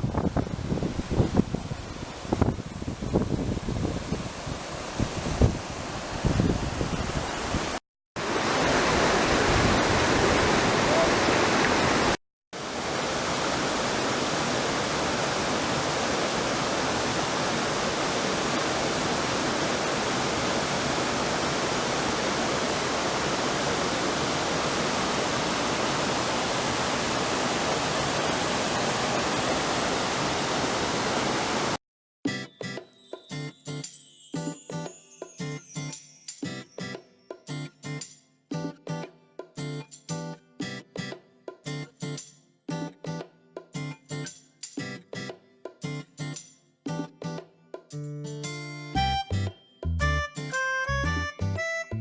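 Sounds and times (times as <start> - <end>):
waterfall rushing: 4.4 - 31.8.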